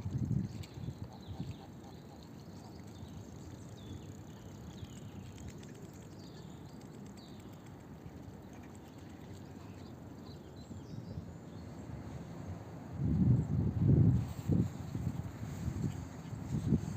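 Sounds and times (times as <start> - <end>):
small birds chirping: 0.3 - 12.3.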